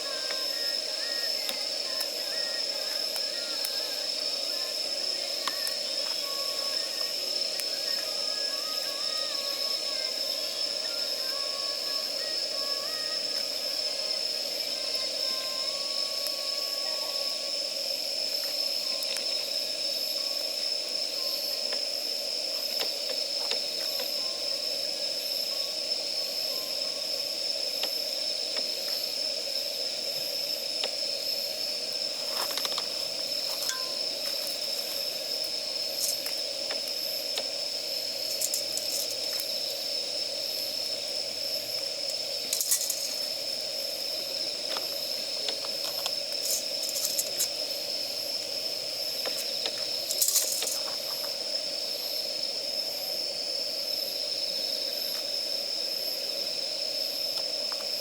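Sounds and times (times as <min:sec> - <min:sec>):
fire hissing: 0:00.0 - 0:58.0
campfire crackling and popping: 0:31.9 - 0:39.6.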